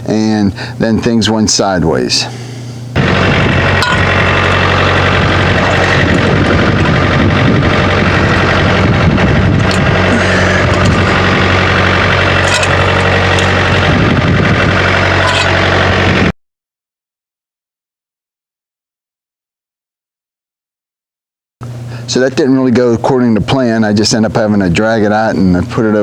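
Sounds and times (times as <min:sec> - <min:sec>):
engine running steadily: 0:00.0 - 0:16.3, 0:21.6 - 0:26.0
sharp clicks and knocks: 0:10.7 - 0:14.0, 0:14.8 - 0:15.8.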